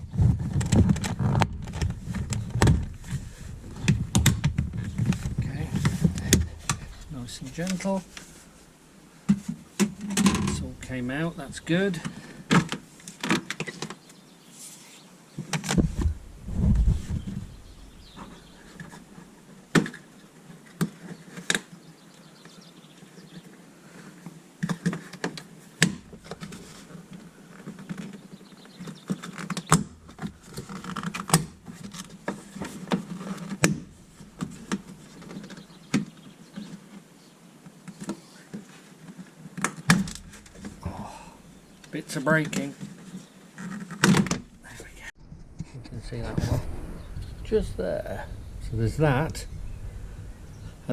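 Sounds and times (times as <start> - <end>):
heavy thuds: 15.8 - 18.6, 45.2 - 50.9.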